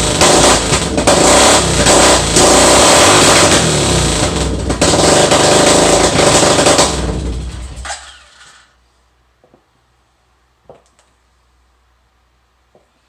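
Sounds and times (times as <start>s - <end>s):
motorcycle engine running loud: 0.0s - 7.9s.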